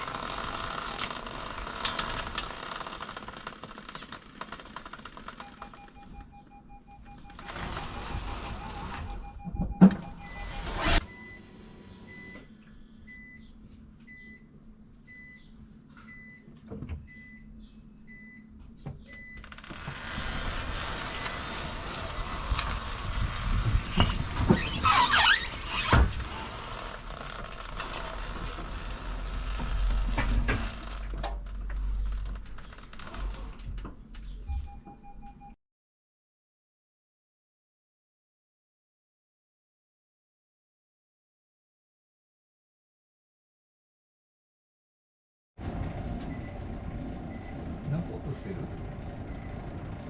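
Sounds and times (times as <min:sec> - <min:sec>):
car warning beep: 0:05.4 - 0:18.5, 0:34.4 - 0:35.6, 0:47.3 - 0:47.6, 0:49.2 - 0:49.7
car moving slowly with rumble: 0:19.7 - 0:33.0.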